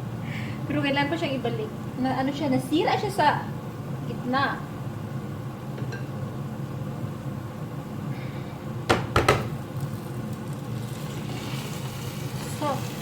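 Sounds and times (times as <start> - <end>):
low kitchen hum: 0.0 - 13.0
utensil knocking on frying pan: 8.9 - 9.6.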